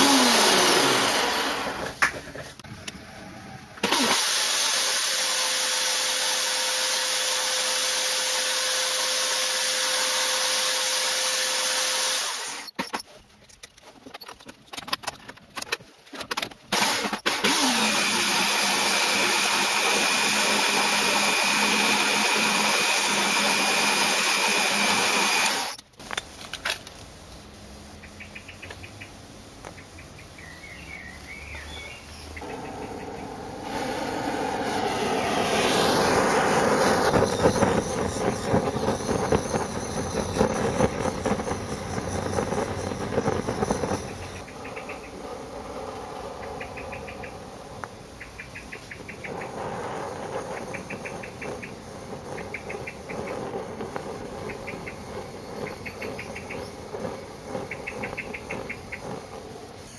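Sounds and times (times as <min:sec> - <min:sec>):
power tool running with hiss: 0:00.0 - 0:02.0, 0:03.8 - 0:12.8, 0:16.8 - 0:25.8, 0:32.4 - 0:44.6
clicks and handling: 0:12.7 - 0:17.4.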